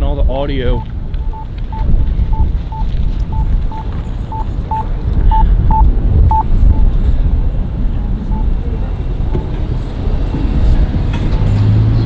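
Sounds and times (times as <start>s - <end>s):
wind buffeting microphone: 0.0s - 12.0s
short electronic beeps: 0.7s - 6.9s, 8.2s - 8.6s.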